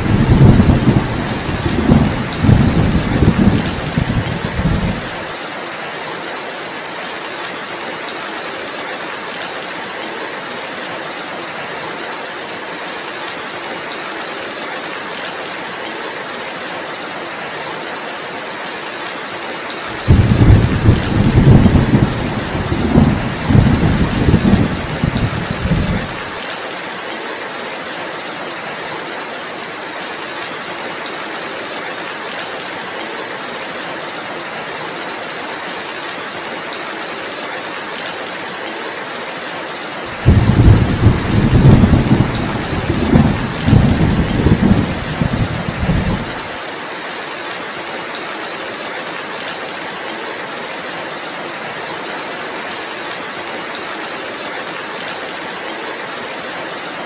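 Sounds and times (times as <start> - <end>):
thunder rumbling: 0.0 - 5.2, 20.0 - 26.3, 40.1 - 46.5
heavy rain: 0.0 - 57.0.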